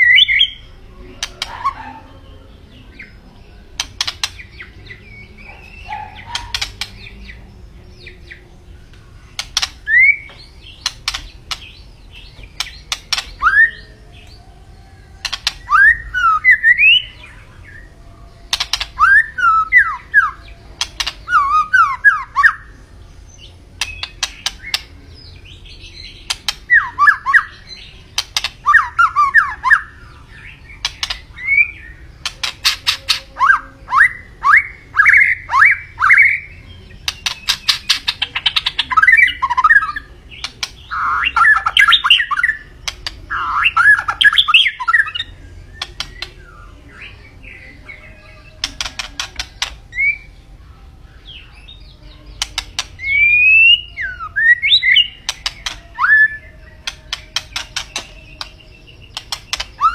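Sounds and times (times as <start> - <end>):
bird whistling song: 0.0 - 2.0, 9.4 - 14.4, 15.1 - 17.9, 18.5 - 50.4, 51.1 - 59.9
bird clicks: 3.8 - 4.5, 6.2 - 7.0, 8.9 - 11.8, 12.6 - 13.4, 15.2 - 15.8, 18.5 - 19.0, 20.8 - 21.3, 23.8 - 25.0, 26.3 - 26.7, 28.1 - 28.7, 30.8 - 31.3, 32.2 - 33.3, 37.0 - 38.6, 40.4 - 40.8, 42.8 - 43.2, 45.8 - 46.4, 48.6 - 49.8, 52.4 - 53.1, 55.2 - 55.9, 56.8 - 59.9.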